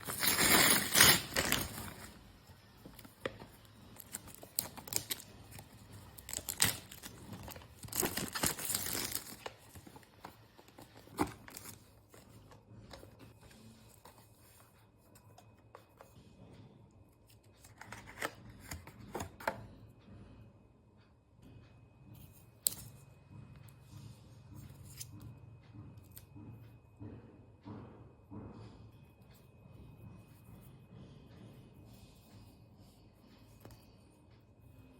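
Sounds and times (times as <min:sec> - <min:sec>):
packaging tearing and crinkling: 0:04.0 - 0:05.6, 0:06.2 - 0:09.7.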